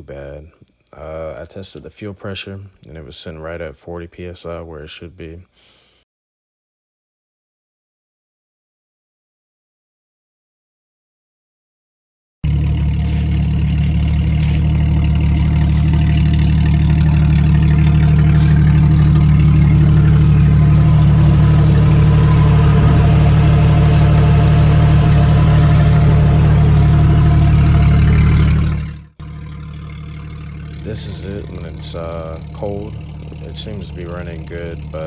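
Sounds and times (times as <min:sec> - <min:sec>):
car engine idling: 0:12.4 - 0:35.0.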